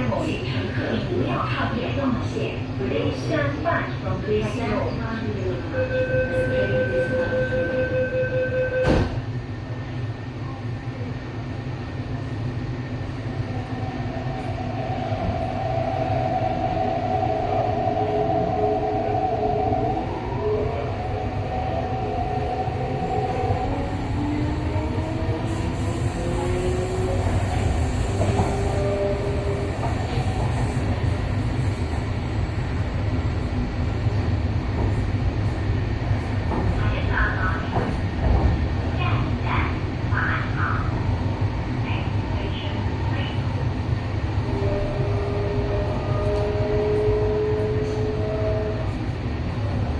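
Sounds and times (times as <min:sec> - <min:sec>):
train rumble: 0:00.0 - 0:49.9
door closing warning tone: 0:08.2 - 0:09.2
train doors shutting thud: 0:08.8 - 0:09.3.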